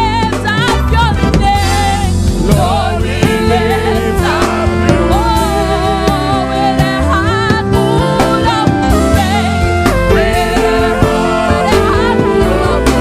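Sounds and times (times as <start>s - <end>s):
gospel choir and band: 0.0s - 13.0s
drum hits: 0.7s - 5.3s
wavering lead voice singing: 1.5s - 13.0s.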